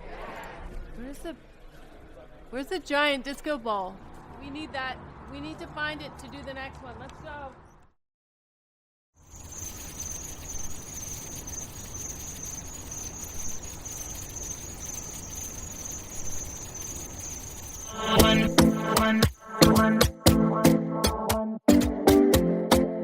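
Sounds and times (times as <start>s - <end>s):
insect chorus: 9.2s - 19.5s.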